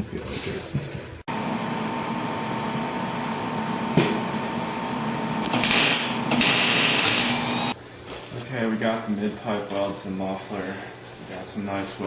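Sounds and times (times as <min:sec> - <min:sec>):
welder humming: 0:01.3 - 0:07.8
welding sizzle: 0:05.1 - 0:07.8.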